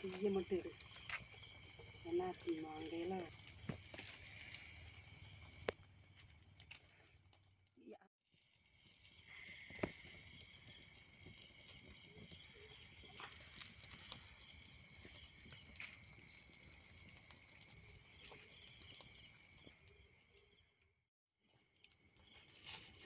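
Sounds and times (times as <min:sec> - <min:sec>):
insects chirring: 0:00.0 - 0:23.0.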